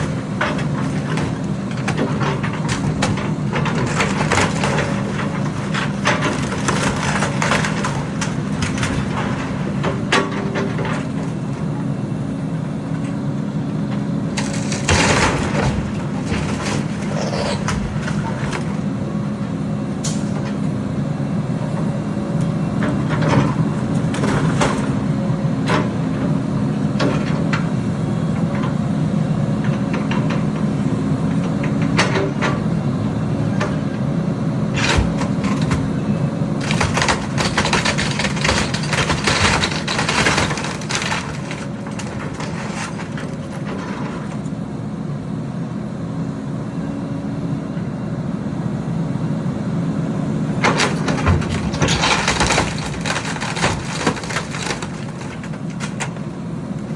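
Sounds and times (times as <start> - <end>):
heavy diesel engine running: 0.0 - 56.9
clattering and scraping: 36.6 - 44.5, 50.6 - 56.2.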